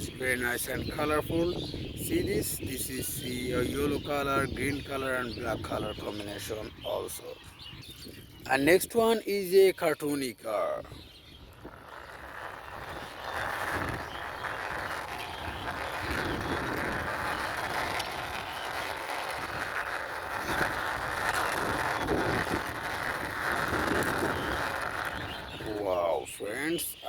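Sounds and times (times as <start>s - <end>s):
toy car wheels rolling: 11.4s - 27.0s.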